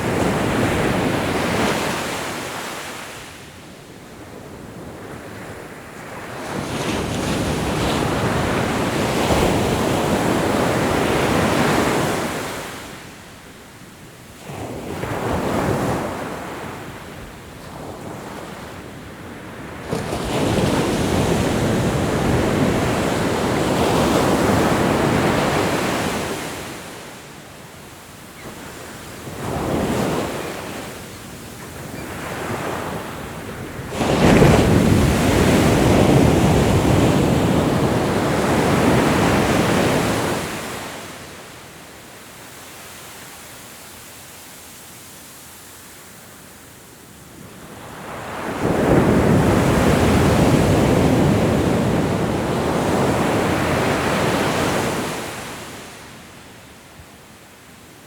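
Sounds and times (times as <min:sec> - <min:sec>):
ocean waves breaking: 0:29.1 - 0:41.2.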